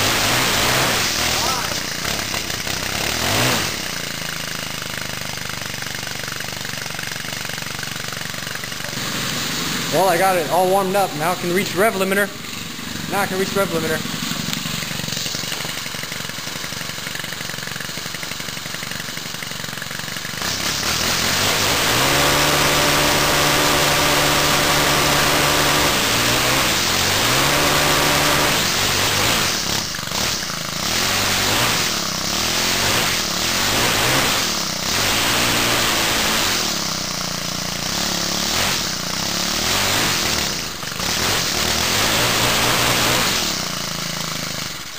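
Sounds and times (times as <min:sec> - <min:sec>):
string trimmer engine revving: 0:00.0 - 0:44.9.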